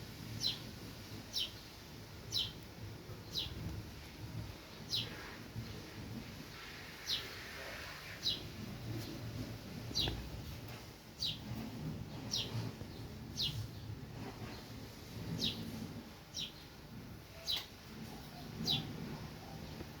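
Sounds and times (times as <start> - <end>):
small bird chirping: 0.3 - 0.7, 1.3 - 3.7, 4.8 - 5.4, 7.0 - 7.5, 8.1 - 8.5, 9.8 - 10.3, 11.2 - 20.0.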